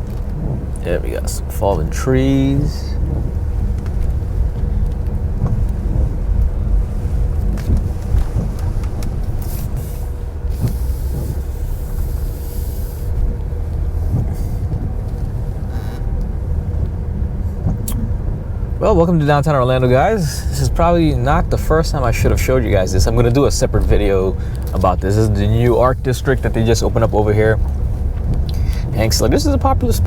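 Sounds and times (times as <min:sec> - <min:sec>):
car engine and road rumble: 0:00.0 - 0:30.0
faint constant hum: 0:00.0 - 0:30.0
tyre hiss on road: 0:09.4 - 0:13.3.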